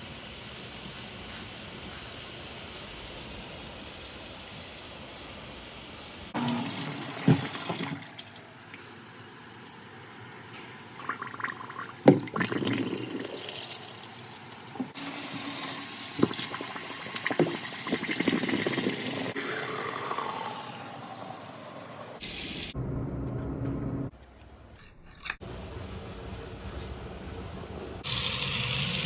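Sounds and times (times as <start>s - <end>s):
water running from a tap: 0.0s - 8.4s, 11.1s - 21.1s, 28.0s - 29.0s.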